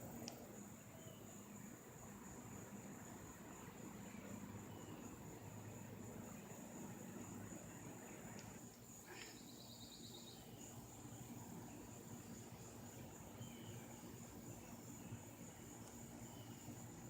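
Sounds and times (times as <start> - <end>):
high insect drone: 0.0 - 17.0
rapid insect trill: 0.0 - 17.0
faint chirps: 0.5 - 1.6, 7.4 - 17.0.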